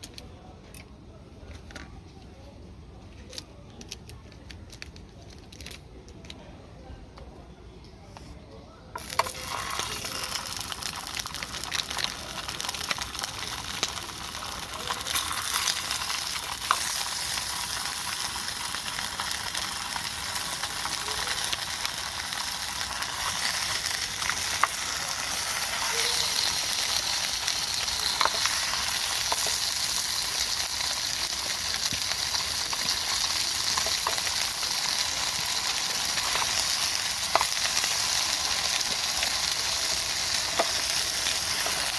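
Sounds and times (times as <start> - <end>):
dumplings sizzling in a pan: 9.0 - 41.9.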